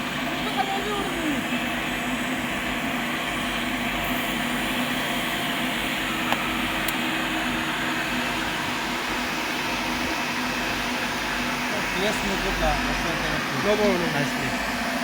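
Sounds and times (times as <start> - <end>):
machinery humming and hissing: 0.0 - 15.0.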